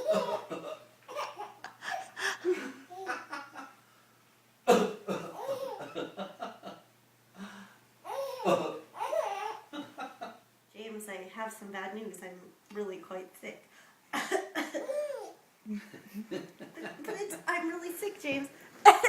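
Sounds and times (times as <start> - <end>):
baby laughing: 0.0 - 3.7, 5.2 - 6.0, 8.0 - 9.9, 14.6 - 15.4
loud cough: 4.7 - 5.4.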